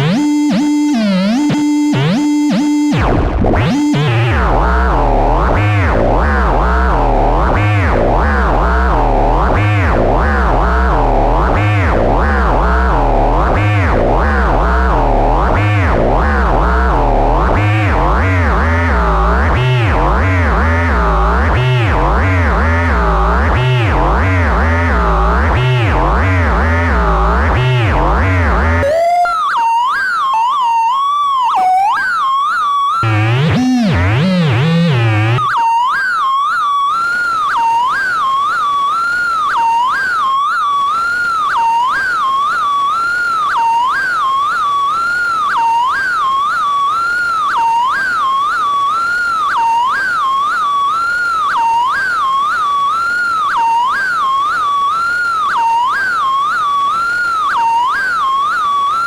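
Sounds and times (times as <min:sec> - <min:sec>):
low stepping synthesizer notes: 0:00.0 - 0:29.2, 0:33.0 - 0:35.5
swooping whistling synthesizer tone: 0:00.0 - 0:44.7, 0:45.6 - 0:59.0.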